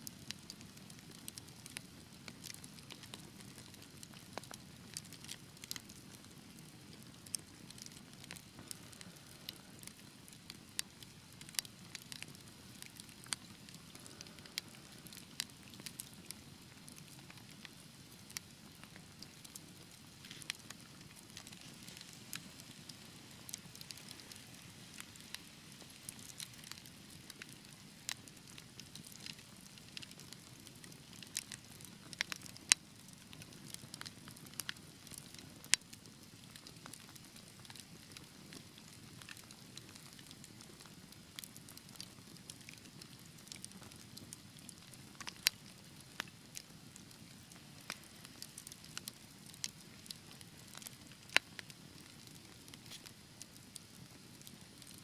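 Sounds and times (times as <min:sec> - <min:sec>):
low rumble of flames: 0:00.0 - 0:54.9
wood fire crackling: 0:00.0 - 0:55.0.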